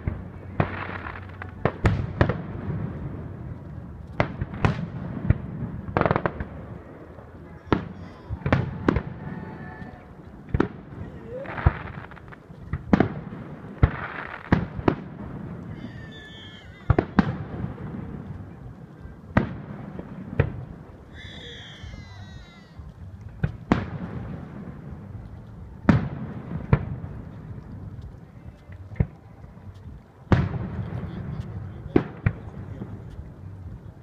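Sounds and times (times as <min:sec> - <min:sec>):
fireworks bangs: 0:00.0 - 0:34.0
fireworks crackling: 0:00.0 - 0:34.0
warbling firework whistles: 0:15.7 - 0:17.4, 0:21.1 - 0:22.8.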